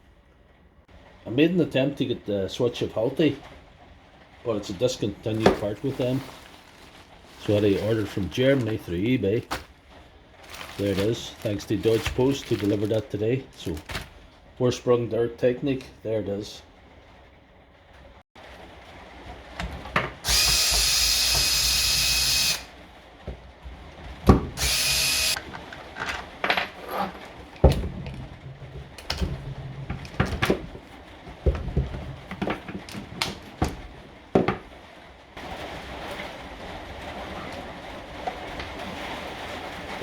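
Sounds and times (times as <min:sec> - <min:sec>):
cordless drill running: 0:20.2 - 0:22.7, 0:24.6 - 0:25.4.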